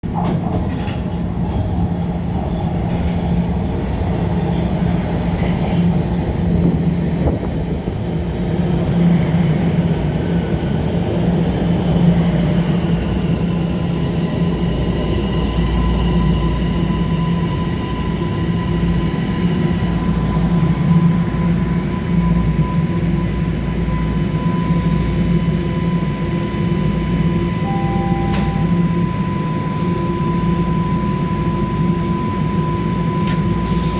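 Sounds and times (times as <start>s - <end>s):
subway train rumbling on rails: 0.0s - 33.9s
high wheel squeals: 17.0s - 25.0s.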